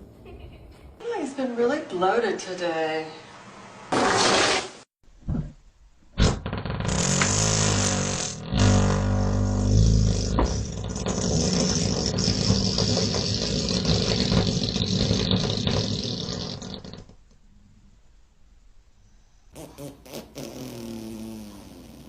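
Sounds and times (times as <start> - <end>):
animal farting: 6.2 - 17.2, 19.5 - 22.0.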